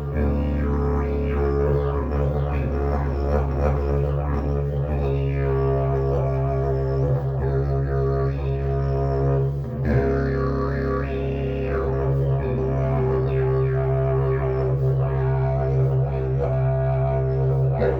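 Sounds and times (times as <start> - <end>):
didgeridoo drone: 0.0 - 17.9.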